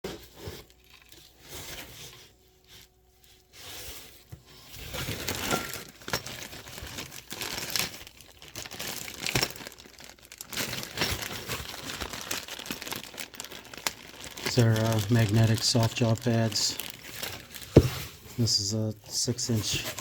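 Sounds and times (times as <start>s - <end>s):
packaging crinkling and rustling: 0.1s - 20.0s.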